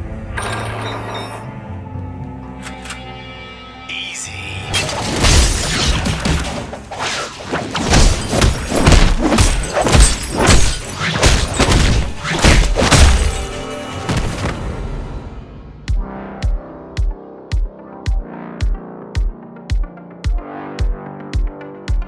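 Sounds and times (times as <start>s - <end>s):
music: 0.0s - 22.0s
glass shattering: 4.7s - 6.7s, 7.8s - 14.6s
hard hits and thuds: 7.5s - 14.8s.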